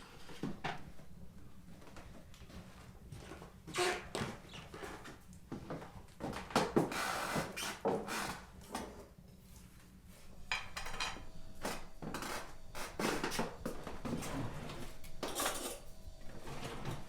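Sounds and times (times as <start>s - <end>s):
dishes and cutlery clinking: 10.5s - 17.0s.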